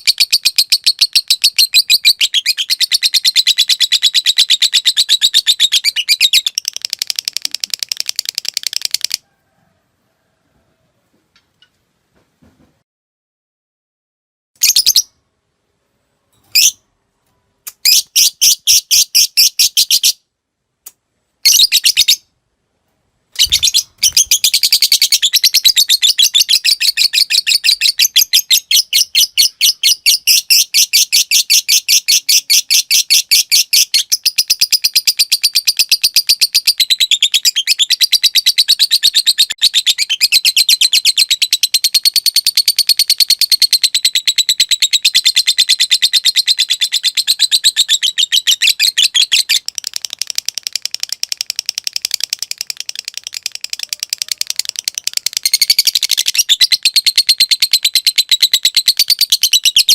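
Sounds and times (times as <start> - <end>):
lovebird chattering trill: 0.0 - 9.2, 23.4 - 59.9
lovebird chirping: 0.0 - 9.2, 14.6 - 15.3, 16.2 - 20.3, 21.4 - 22.3, 23.3 - 59.9.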